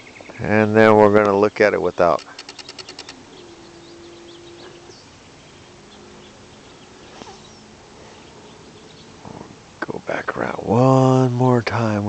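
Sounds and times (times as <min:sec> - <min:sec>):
low steady hum: 0:00.0 - 0:12.0
high bird chirps: 0:01.4 - 0:09.3.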